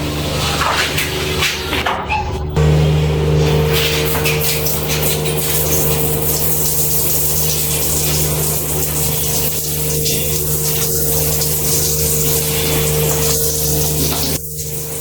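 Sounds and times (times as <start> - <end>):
electric water pump humming: 0.0 - 15.0.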